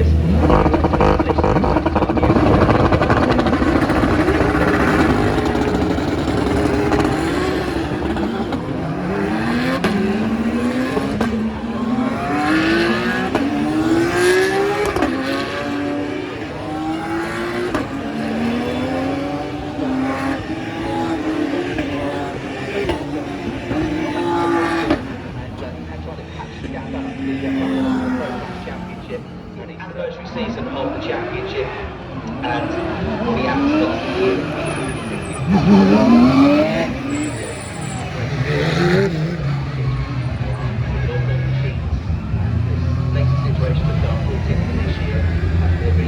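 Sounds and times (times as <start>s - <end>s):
engine accelerating through gears: 0.0s - 29.8s, 31.0s - 46.0s
racing car engines: 0.0s - 46.0s.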